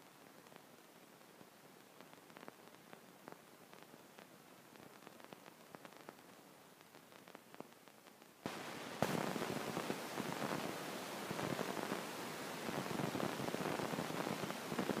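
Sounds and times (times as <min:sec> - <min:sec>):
faint ticks: 0:02.0 - 0:08.3.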